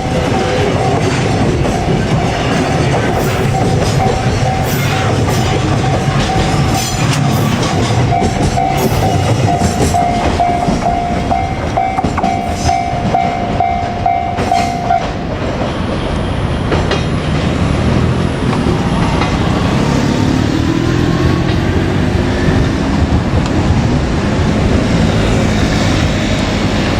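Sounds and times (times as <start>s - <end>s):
level-crossing bell ringing: 0.0s - 15.1s
freight train rumbling past: 0.0s - 26.9s.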